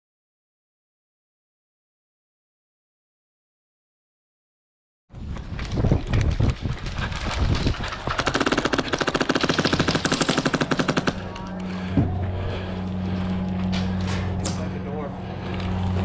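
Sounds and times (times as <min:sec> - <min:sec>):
airsoft gun firing: 0:08.1 - 0:11.4
steady low hum: 0:08.7 - 0:16.0.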